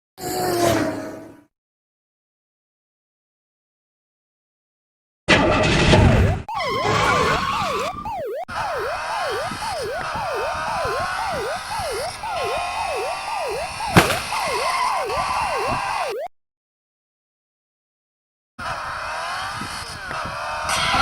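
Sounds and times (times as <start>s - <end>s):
police siren yelping: 6.1s - 16.3s
sharp bang: 13.9s - 14.7s.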